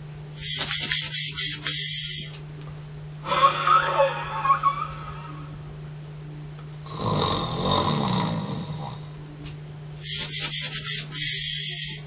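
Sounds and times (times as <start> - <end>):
short sharp hiss bursts: 0.4 - 2.4, 10.0 - 12.0
person snoring: 6.8 - 9.2, 10.0 - 12.0.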